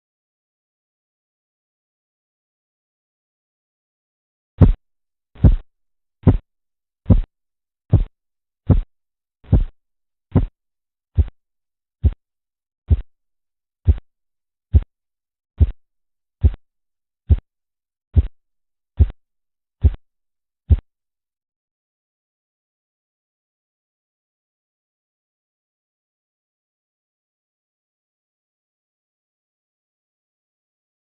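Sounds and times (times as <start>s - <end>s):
pulse taps through stethoscope: 4.6s - 4.8s, 5.4s - 5.6s, 6.2s - 6.4s, 7.1s - 7.3s, 7.9s - 8.1s, 8.7s - 10.5s, 11.2s - 11.4s, 12.9s - 13.1s, 13.9s - 14.1s, 14.7s - 14.9s, 15.6s - 15.8s, 16.4s - 16.6s, 17.3s - 17.5s, 18.2s - 18.4s, 19.0s - 19.2s, 19.8s - 20.0s, 20.7s - 20.9s.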